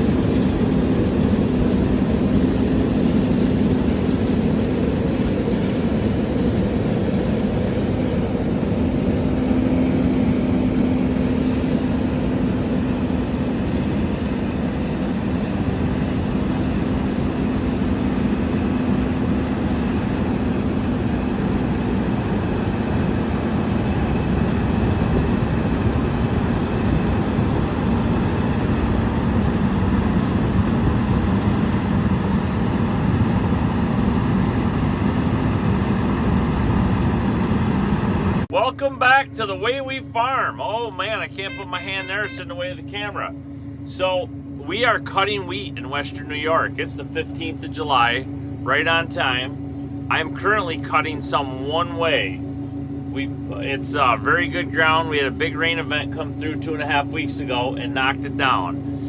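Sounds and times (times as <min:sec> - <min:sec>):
combine harvester engine drone: 0:00.0 - 0:59.0.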